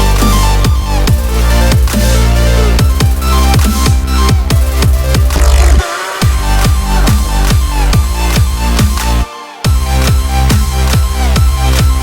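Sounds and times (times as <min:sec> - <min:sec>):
deep bass: 0:00.0 - 0:12.0
electronic dance music: 0:00.0 - 0:12.0
synth chords: 0:00.0 - 0:12.0
steady kick drum: 0:00.6 - 0:02.1, 0:02.8 - 0:12.0.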